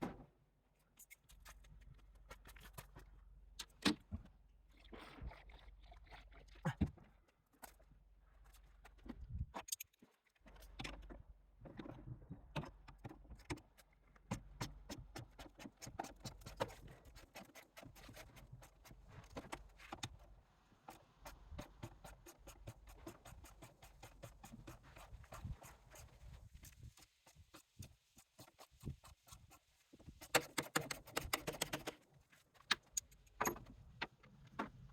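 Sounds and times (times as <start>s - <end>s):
metal clicks of hand tools: 32.7s - 33.6s.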